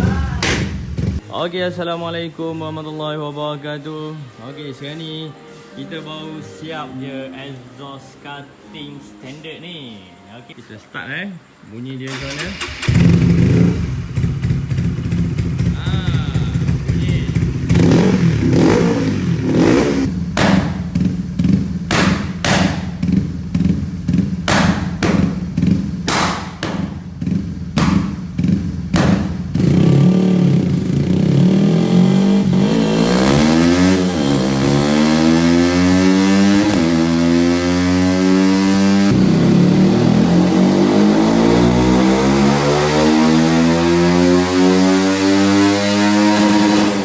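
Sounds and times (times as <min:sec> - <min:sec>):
motorcycle engine revving: 0:00.0 - 0:01.3, 0:12.1 - 0:47.0.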